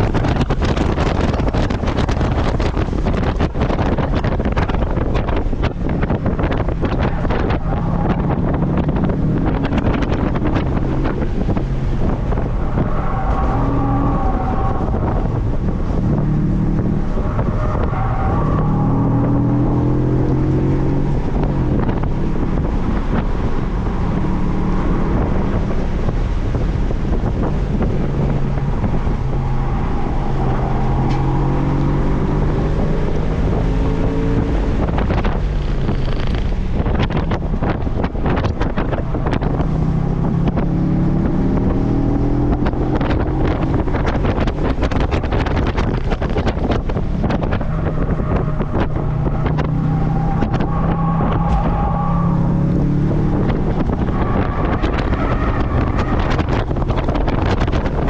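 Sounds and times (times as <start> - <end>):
car engine accelerating hard: 0.0 - 58.0
wind buffeting microphone: 0.0 - 58.0.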